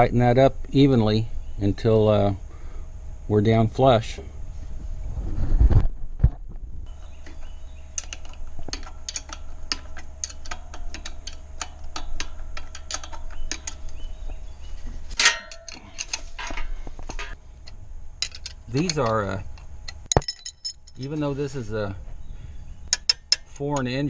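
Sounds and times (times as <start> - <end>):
ratchet wrench clicking: 8.0 - 14.0.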